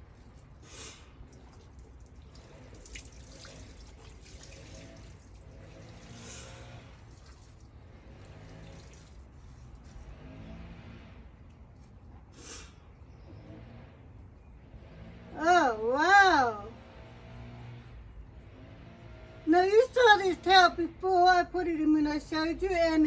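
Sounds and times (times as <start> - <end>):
water sloshing and dripping: 0.0 - 10.2.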